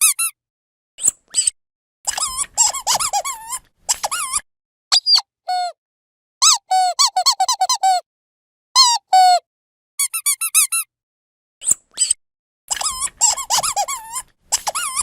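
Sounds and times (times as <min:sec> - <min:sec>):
squeaky dog toy squeaking: 0:00.0 - 0:00.4, 0:02.1 - 0:05.8, 0:06.4 - 0:08.0, 0:08.8 - 0:09.4, 0:10.0 - 0:10.9, 0:11.6 - 0:15.0.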